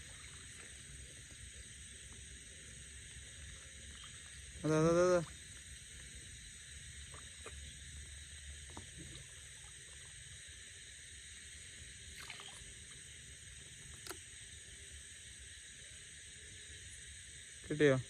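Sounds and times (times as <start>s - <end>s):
faint splashes: 0.0s - 2.3s, 8.6s - 10.4s, 11.9s - 14.3s
night insects chirring: 0.0s - 18.0s.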